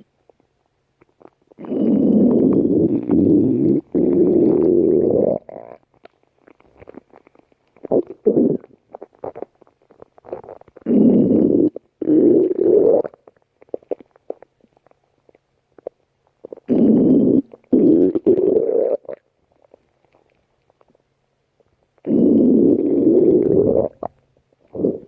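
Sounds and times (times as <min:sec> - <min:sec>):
stomach gurgles and clicks: 0:00.0 - 0:25.0
stomach growling: 0:01.0 - 0:21.0, 0:21.6 - 0:25.0.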